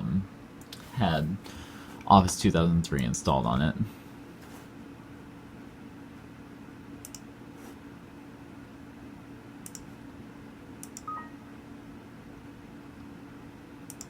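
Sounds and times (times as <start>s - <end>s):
desktop computer hum: 0.0s - 14.0s
computer mouse clicks: 7.0s - 7.3s, 9.6s - 9.9s, 10.8s - 11.1s.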